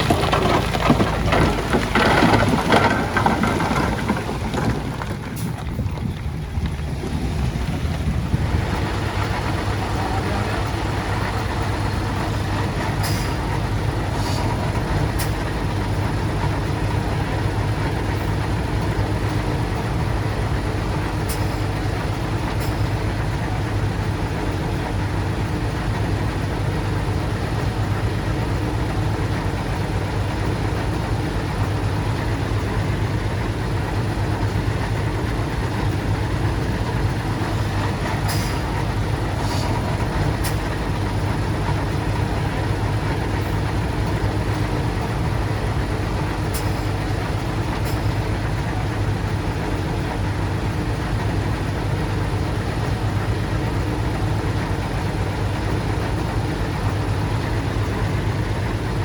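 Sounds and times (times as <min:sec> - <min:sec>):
diesel engine droning: 0:00.0 - 0:59.0.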